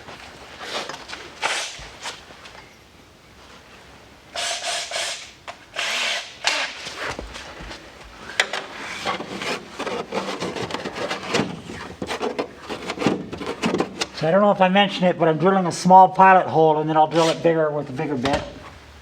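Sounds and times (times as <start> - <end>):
power drill drilling: 4.4 - 6.8.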